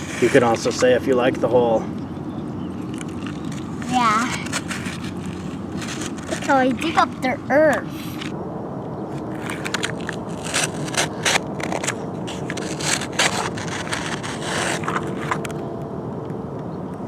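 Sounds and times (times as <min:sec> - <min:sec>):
toy excavator scraping sand: 0:00.0 - 0:01.0, 0:03.2 - 0:07.2, 0:09.2 - 0:15.5.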